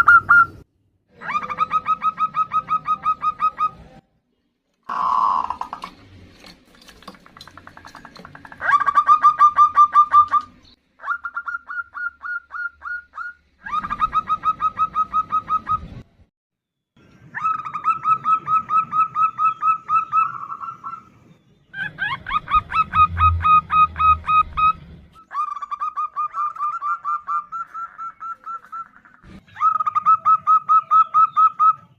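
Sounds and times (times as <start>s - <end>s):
dove stuttering call: 7.5s - 16.0s, 17.4s - 21.2s.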